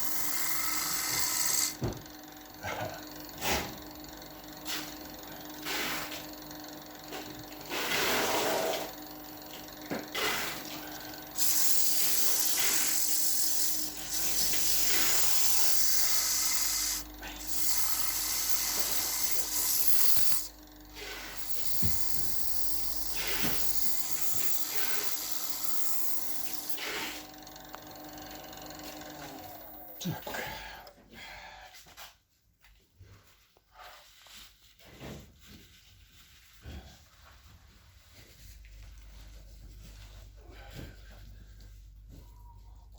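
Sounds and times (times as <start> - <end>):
sanding hiss on spinning wood: 0.0 - 1.9, 5.6 - 6.4, 7.0 - 8.9, 9.5 - 27.3
lathe motor hum: 0.0 - 30.9.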